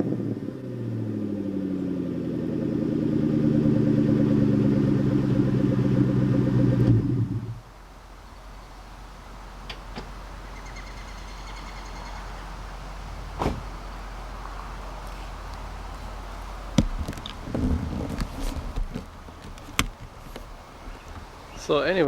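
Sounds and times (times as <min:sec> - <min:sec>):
car door clicks: 0:13.4 - 0:13.7
car door thump: 0:13.4 - 0:13.7.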